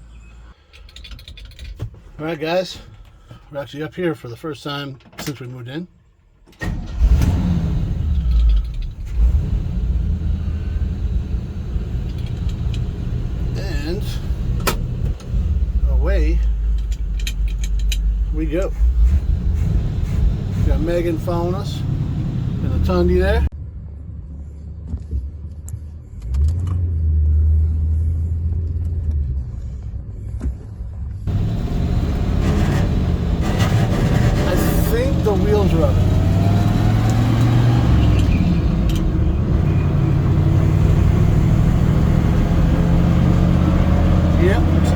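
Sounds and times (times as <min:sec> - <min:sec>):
road noise: 0:00.0 - 0:44.9
light clicks and rattles: 0:00.6 - 0:02.0, 0:08.1 - 0:09.1, 0:12.0 - 0:13.0, 0:16.4 - 0:18.8
pickup engine low rumble: 0:06.6 - 0:44.9.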